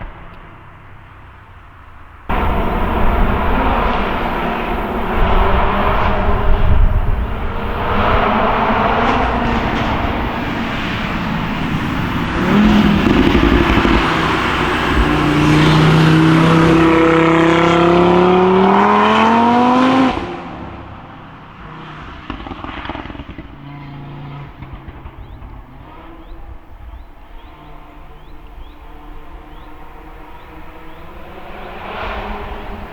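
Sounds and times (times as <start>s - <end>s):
car engine accelerating hard: 0.0s - 32.9s
exhaust cracks: 0.0s - 32.9s.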